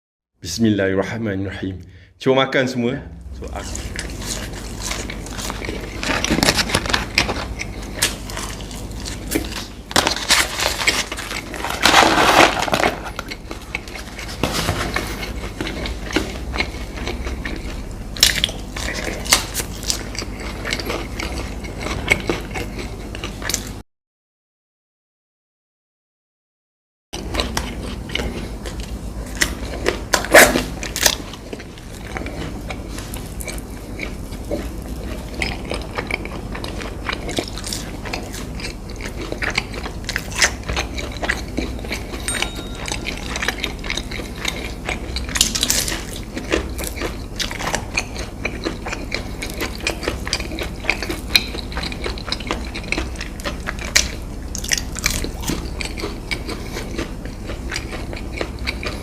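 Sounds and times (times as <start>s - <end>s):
crunchy chewing: 3.4s - 23.8s, 27.2s - 59.0s
low hum: 41.2s - 48.1s.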